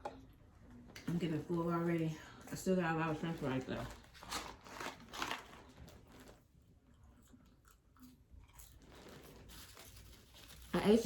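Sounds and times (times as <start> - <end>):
person chewing and biting food: 6.8 - 10.0.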